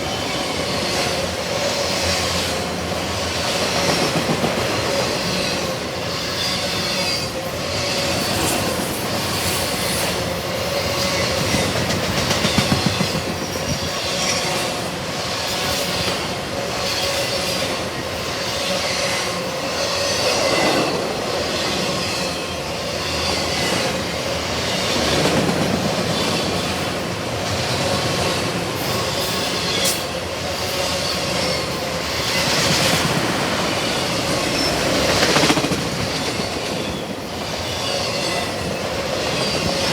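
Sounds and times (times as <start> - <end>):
freight train rolling past: 0.0 - 39.9
wheels clacking over rail joints: 11.1 - 14.8.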